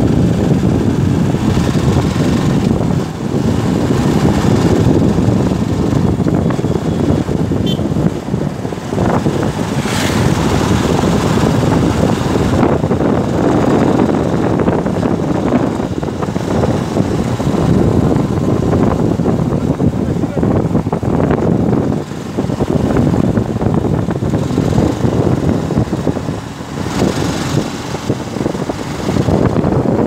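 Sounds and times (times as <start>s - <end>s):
motorcycle engine running: 0.0s - 30.0s
wind buffeting microphone: 0.0s - 30.0s.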